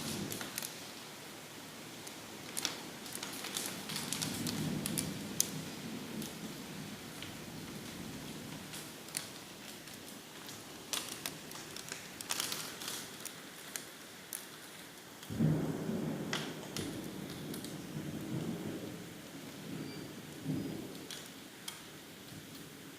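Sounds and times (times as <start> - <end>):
hailstones clicking on hard surfaces: 0.0 - 0.8, 2.0 - 5.6, 7.1 - 18.5, 20.4 - 22.7
heavy rain hiss: 0.0 - 22.9.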